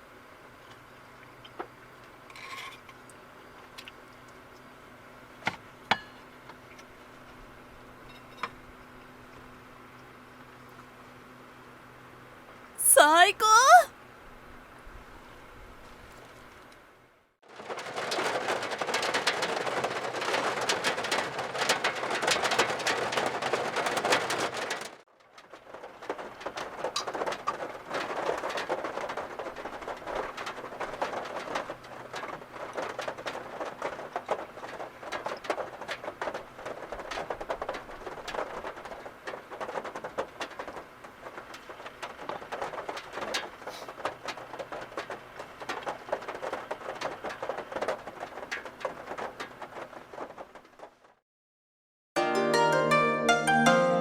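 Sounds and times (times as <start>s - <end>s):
heavy rain drumming on car roof: 17.5s - 25.0s, 26.4s - 50.6s.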